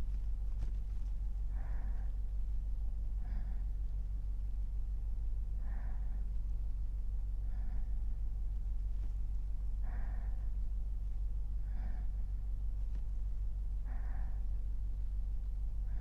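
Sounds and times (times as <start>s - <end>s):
steady low hum: 0.0s - 16.0s
man breathing in sleep: 1.4s - 2.4s, 3.0s - 4.2s, 5.4s - 16.0s.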